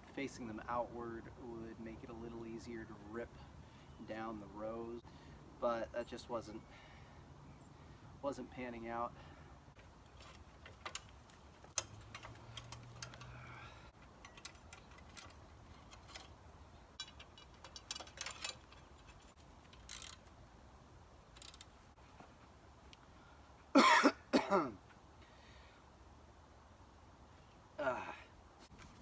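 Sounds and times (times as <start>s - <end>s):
hand tools clicking on steel: 10.2s - 20.3s.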